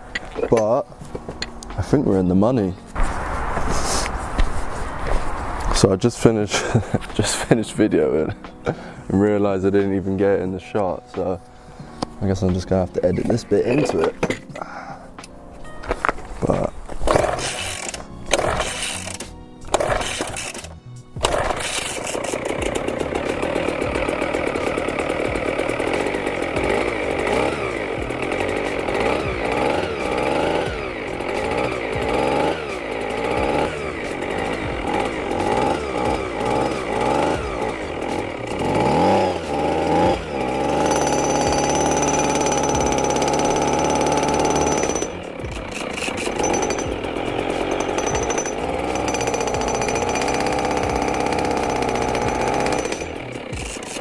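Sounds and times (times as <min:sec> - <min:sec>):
petrol breaker engine revving: 0:17.1 - 0:54.0.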